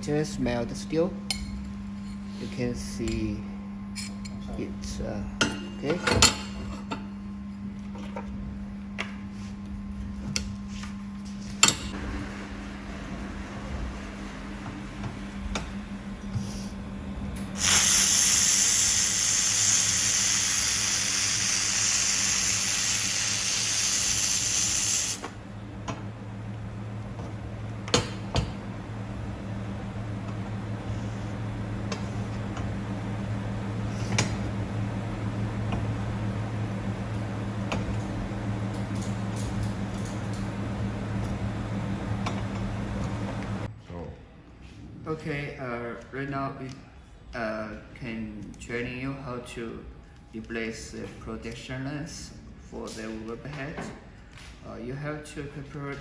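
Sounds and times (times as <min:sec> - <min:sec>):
low machine hum: 0:00.0 - 0:56.0
laser welding gun hissing: 0:17.6 - 0:25.3.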